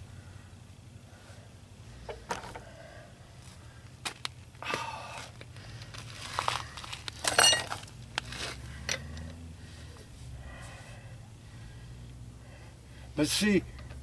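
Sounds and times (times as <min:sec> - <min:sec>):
ringing metal clank: 0:07.3 - 0:07.7.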